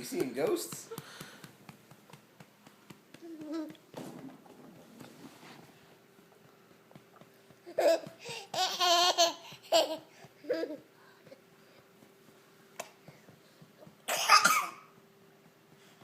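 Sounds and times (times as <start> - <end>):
baby laughing: 7.7 - 10.9.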